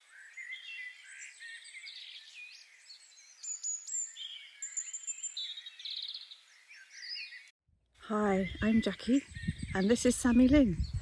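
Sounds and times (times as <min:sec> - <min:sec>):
songbirds singing: 0:00.0 - 0:11.0
fast bird trill: 0:08.3 - 0:11.0.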